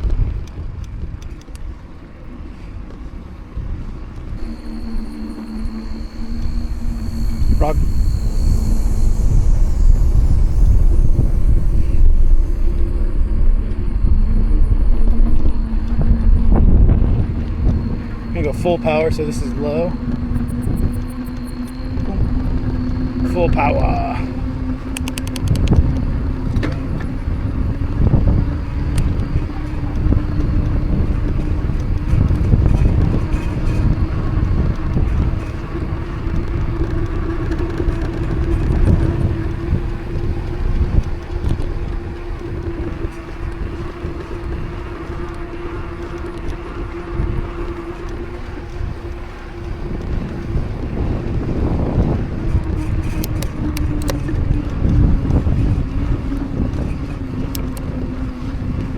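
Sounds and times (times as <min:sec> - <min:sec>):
bike tyres humming on pavement: 0:00.0 - 0:58.9
rolling rumble: 0:00.0 - 0:58.9
wind noise: 0:00.0 - 0:58.9
bike knocking and rattling: 0:17.0 - 0:58.9.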